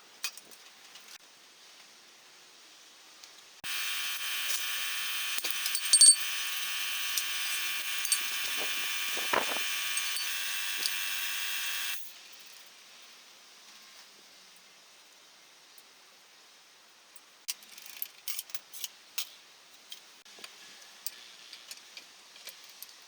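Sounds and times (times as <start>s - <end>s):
small electric power tool running: 3.6s - 12.1s.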